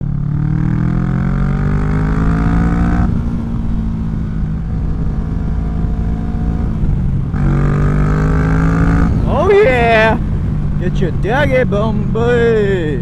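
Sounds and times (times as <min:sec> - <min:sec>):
motorcycle engine revving: 0:00.0 - 0:13.0.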